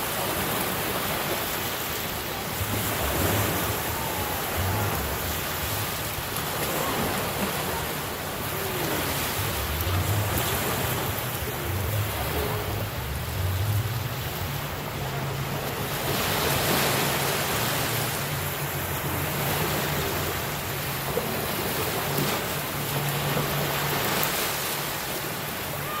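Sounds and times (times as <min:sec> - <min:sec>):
ocean surf washing on shore: 0:00.0 - 0:26.0
wind rumbling on microphone: 0:00.4 - 0:19.1.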